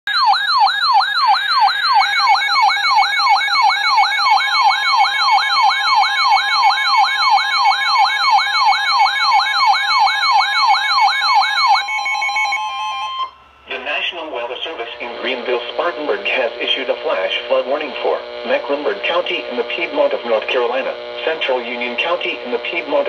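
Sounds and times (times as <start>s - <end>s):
electronic siren yelping: 0.1s - 15.6s
steady high tone: 9.5s - 23.0s.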